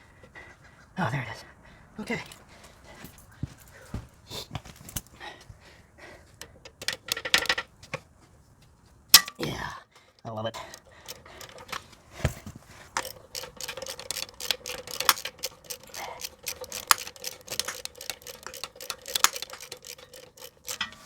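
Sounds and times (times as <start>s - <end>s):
hand tools clicking and clinking: 6.3s - 7.8s, 9.2s - 21.0s.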